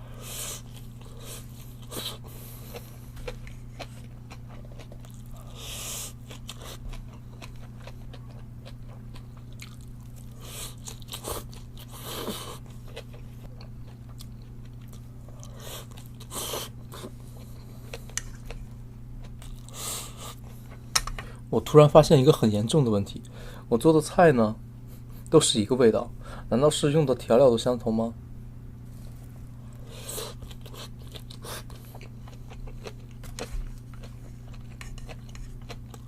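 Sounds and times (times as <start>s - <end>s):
low electrical hum: 0.0s - 36.0s
chewing and crunching: 0.6s - 20.9s, 28.8s - 36.0s.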